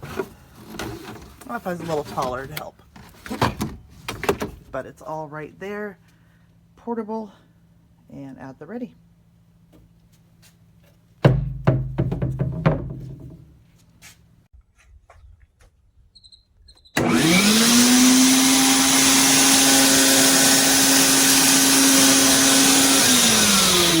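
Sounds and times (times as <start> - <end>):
knocks and clatter: 11.2 - 13.6
shop vacuum motor whining: 17.0 - 24.0.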